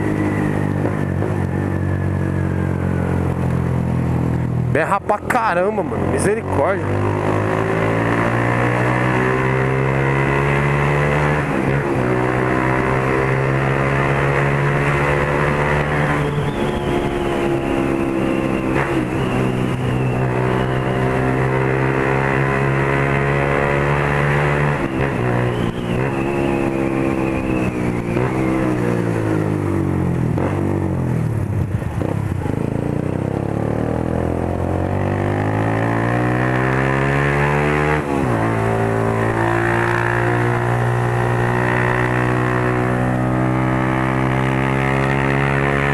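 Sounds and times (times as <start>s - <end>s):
loud motorcycle engine: 0.0s - 45.9s.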